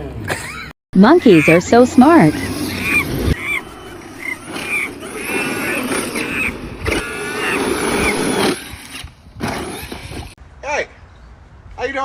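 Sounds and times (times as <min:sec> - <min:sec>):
monkey calling: 0:00.5 - 0:08.4.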